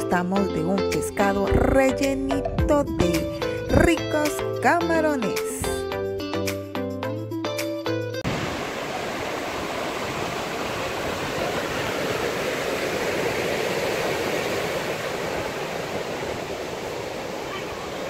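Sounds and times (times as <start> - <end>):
ocean waves washing in: 8.2 - 18.0.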